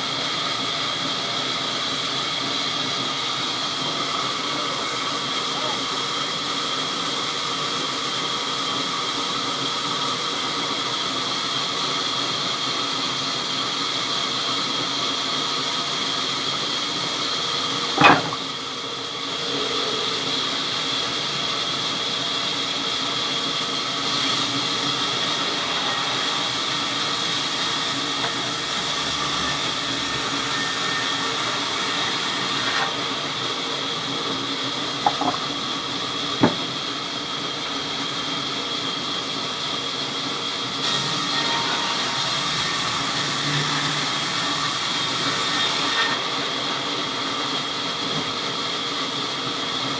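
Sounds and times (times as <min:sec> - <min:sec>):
sharp knock: 0:36.4 - 0:36.7.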